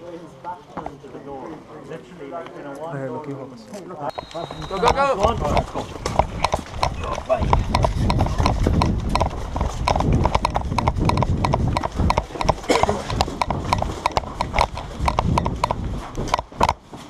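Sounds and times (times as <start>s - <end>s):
kit jostling: 4.1s - 16.7s
running footsteps: 4.1s - 17.0s.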